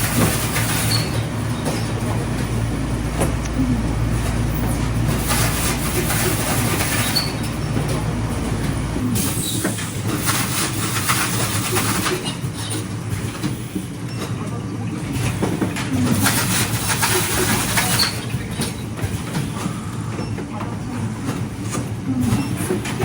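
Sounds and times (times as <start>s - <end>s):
low hum: 0.0s - 9.3s
taping machine rasping: 0.0s - 12.2s.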